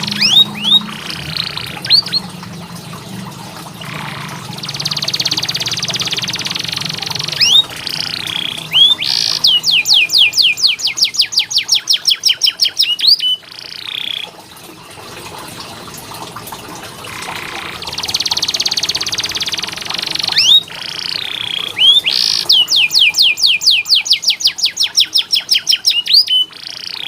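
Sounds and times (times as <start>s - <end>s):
canary singing trills: 0.0s - 2.4s, 3.8s - 14.3s, 17.1s - 27.0s.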